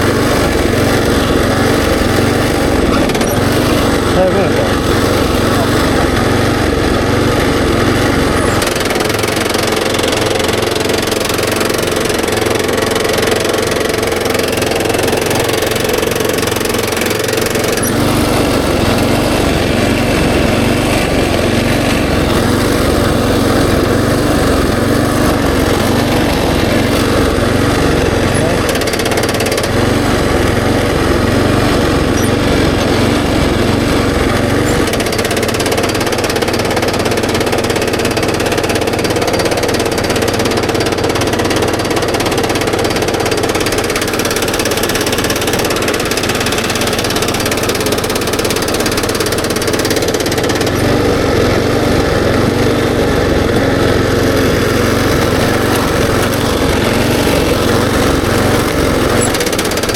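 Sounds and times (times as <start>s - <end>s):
engine running: 0.0s - 59.9s
rapid rhythmic machine clatter: 0.0s - 59.9s.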